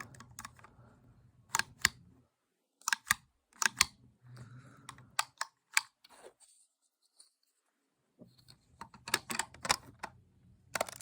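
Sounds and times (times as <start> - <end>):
plastic pieces clicking: 2.8 - 3.9, 8.8 - 10.1, 10.7 - 11.0.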